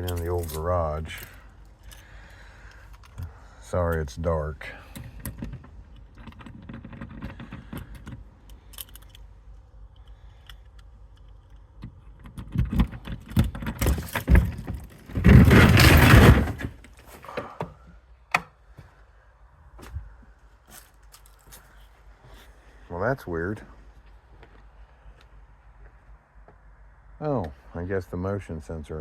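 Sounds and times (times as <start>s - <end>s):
keys jangling: 0.0s - 2.1s, 7.1s - 9.2s
lock clicks and rattles: 2.7s - 3.3s, 4.9s - 17.0s
garage door scraping open: 13.8s - 16.8s.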